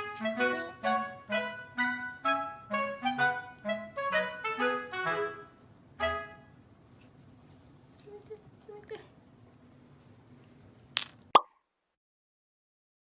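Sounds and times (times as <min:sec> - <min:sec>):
bouncy woodwind melody: 0:00.0 - 0:06.6.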